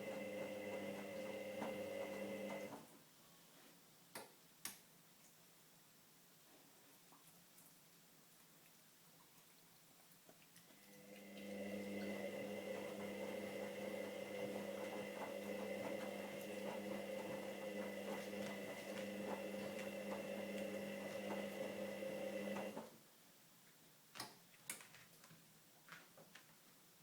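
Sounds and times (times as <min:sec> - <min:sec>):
washing machine motor hum: 0:00.0 - 0:02.9, 0:10.9 - 0:22.9.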